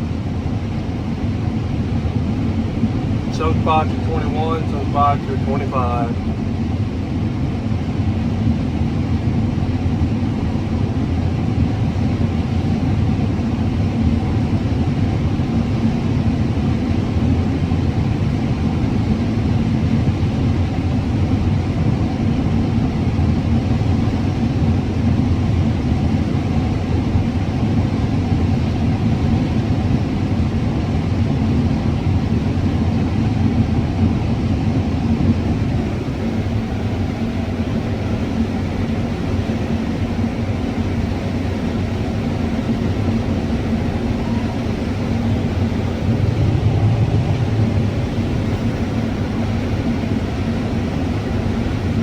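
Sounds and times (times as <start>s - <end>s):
combine harvester engine drone: 0.0s - 52.0s.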